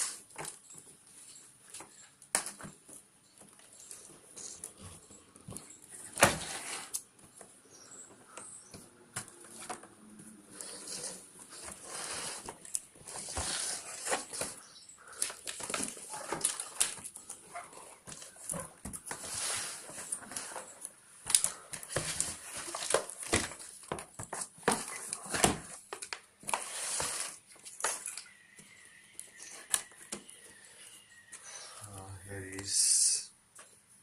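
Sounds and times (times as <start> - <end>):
packaging rustling and crinkling: 10.6 - 30.6.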